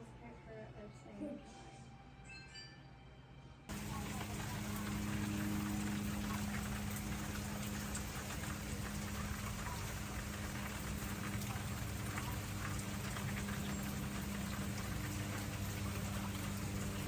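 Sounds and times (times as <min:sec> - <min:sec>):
heavy rain: 0:03.7 - 0:17.0
low hum: 0:03.7 - 0:17.0.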